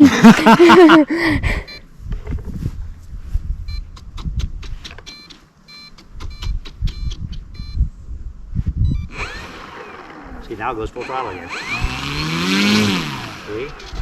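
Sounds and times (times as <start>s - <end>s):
wind rumble: 1.1s - 4.8s, 6.1s - 11.0s
electric motor and propeller whining: 9.0s - 14.0s.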